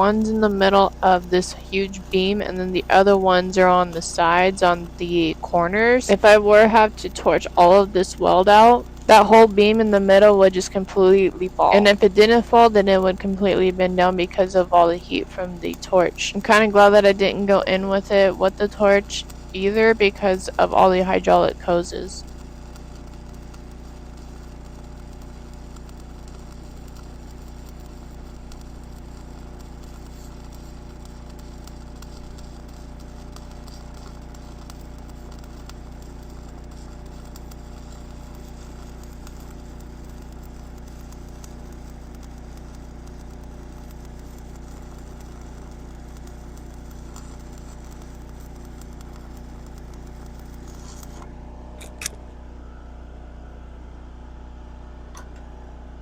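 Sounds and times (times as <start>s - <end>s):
low mechanical hum: 0.0s - 56.0s
sharp click: 50.7s - 52.2s.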